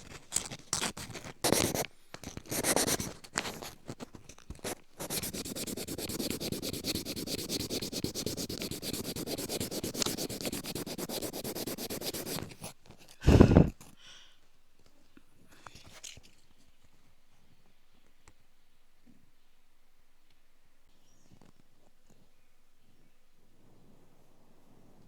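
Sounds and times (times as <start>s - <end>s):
rapid scraping: 0.0s - 12.7s.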